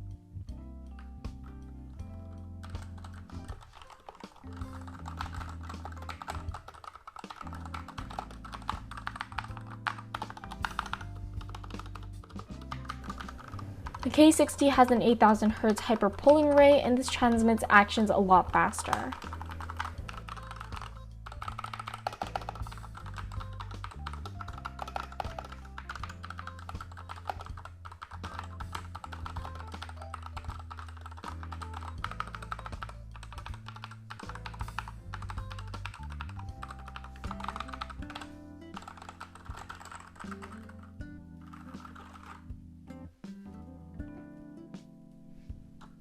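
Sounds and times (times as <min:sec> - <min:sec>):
background music: 0:00.0 - 0:46.0
fast keyboard typing: 0:02.4 - 0:42.5.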